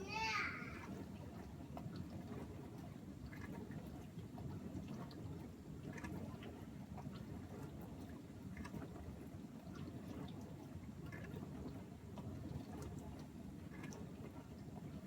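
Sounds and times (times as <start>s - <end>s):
dishwasher pump hum: 0.0s - 2.9s.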